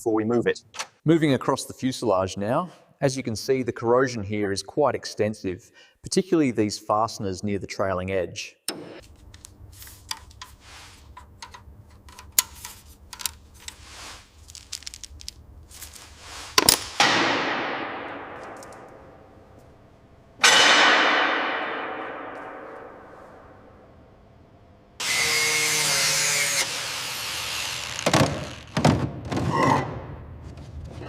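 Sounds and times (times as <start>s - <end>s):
loud ringing metal clangs: 20.4s - 23.8s.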